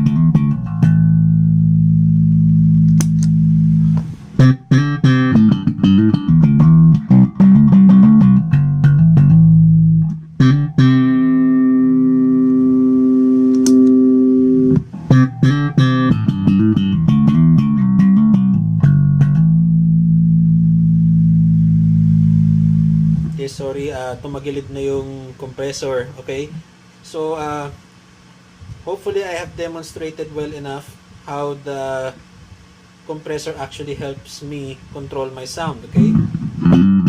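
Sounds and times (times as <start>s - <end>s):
slap bass guitar: 0.0s - 24.0s, 35.7s - 37.0s.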